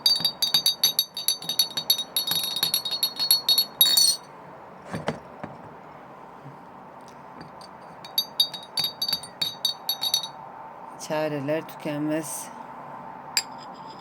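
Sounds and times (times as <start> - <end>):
teaspoon clinking in glass: 0.0 - 4.3, 7.5 - 10.4.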